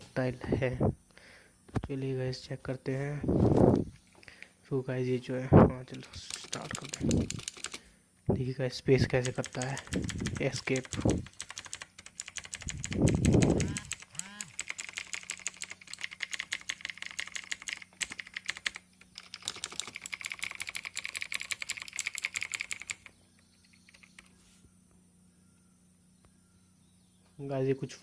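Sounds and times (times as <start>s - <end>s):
rapid mechanical keyboard typing: 5.9s - 7.8s, 9.0s - 24.3s.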